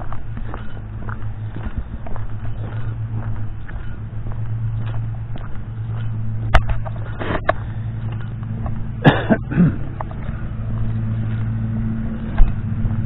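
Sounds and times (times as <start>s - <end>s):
vehicle engine humming: 0.0s - 13.0s
cough-like bursts: 9.0s - 9.9s.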